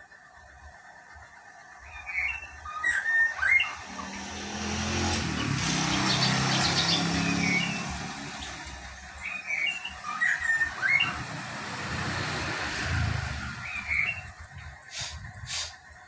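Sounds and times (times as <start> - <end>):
bird whistled chirps: 1.9 - 4.4, 5.4 - 8.6, 9.2 - 11.6, 12.9 - 14.4
motor vehicle passing: 3.2 - 15.4.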